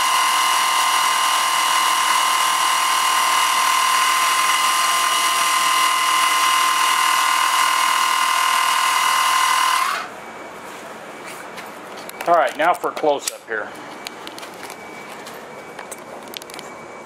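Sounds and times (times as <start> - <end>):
air compressor motor whine: 0.0 - 12.4.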